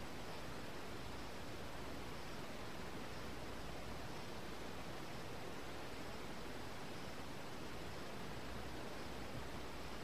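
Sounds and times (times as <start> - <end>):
steady background hiss: 0.0 - 10.0.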